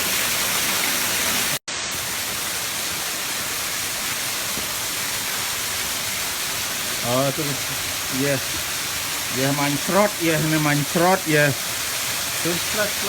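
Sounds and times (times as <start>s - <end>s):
water rushing over spillway: 0.0s - 13.0s.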